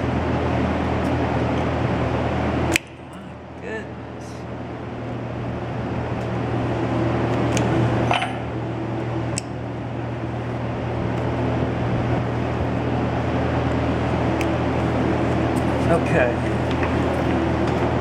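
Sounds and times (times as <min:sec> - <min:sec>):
machine hum: 0:00.0 - 0:18.0.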